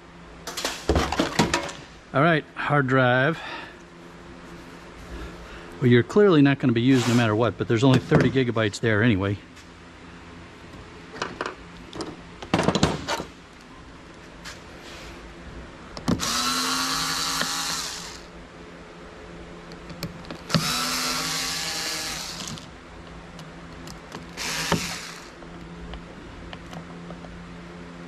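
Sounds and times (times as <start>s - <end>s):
cordless drill-driver running: 16.2s - 18.3s, 20.5s - 22.7s, 24.4s - 25.4s.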